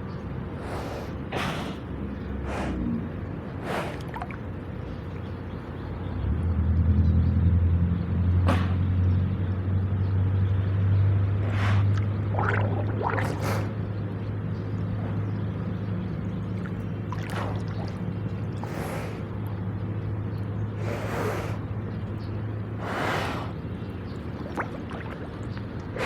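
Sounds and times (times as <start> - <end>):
low steady motor hum: 0.0 - 26.0
water splashing: 3.6 - 5.4, 11.4 - 15.4, 16.2 - 19.6, 22.8 - 26.0.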